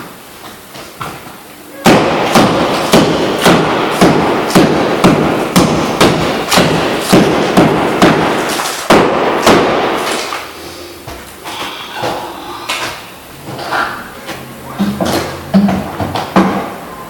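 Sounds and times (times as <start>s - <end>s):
hammer blows on wood: 1.8s - 10.2s.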